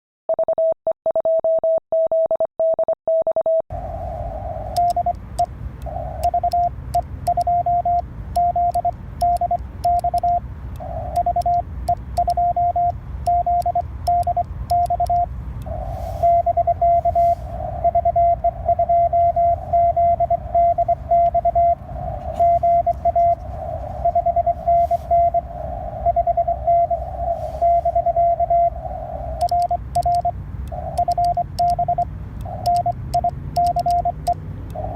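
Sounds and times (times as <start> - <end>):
received morse code signal: 4.2 - 34.9
morse code sidetone beeps: 4.6 - 34.9
radio band noise: 15.6 - 29.9.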